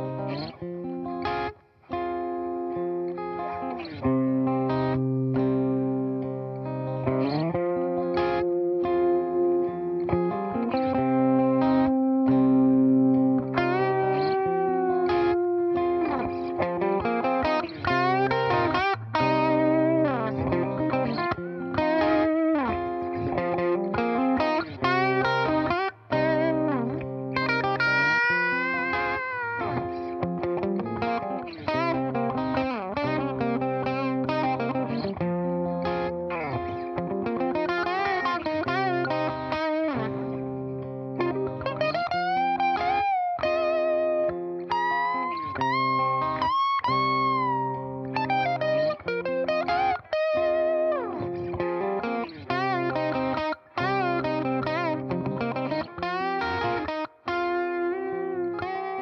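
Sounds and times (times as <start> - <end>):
electric guitar with bends: 0.0 - 59.0.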